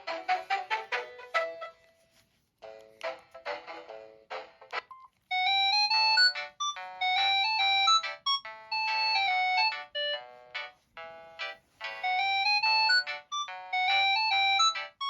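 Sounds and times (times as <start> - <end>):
polyphonic ringtone melody: 5.3 - 15.0.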